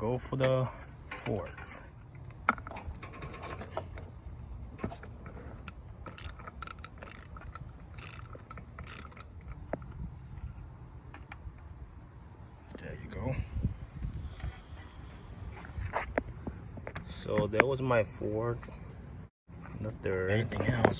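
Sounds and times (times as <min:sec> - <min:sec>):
metal socket clinking: 0:05.6 - 0:10.1
ratchet wrench clicking: 0:05.6 - 0:10.1.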